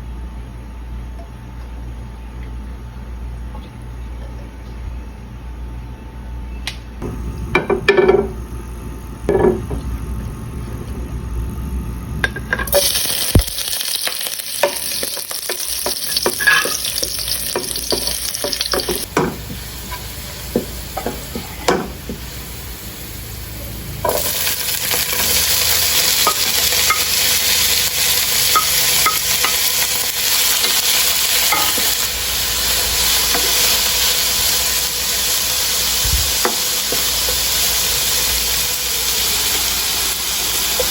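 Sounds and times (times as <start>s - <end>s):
food sizzling in a pan: 12.6s - 40.9s
utensil clinking and scraping: 14.6s - 19.1s.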